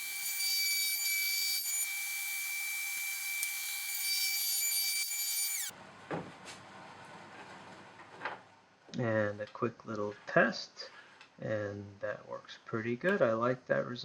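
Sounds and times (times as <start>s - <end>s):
router whining while cutting wood: 0.0s - 5.7s.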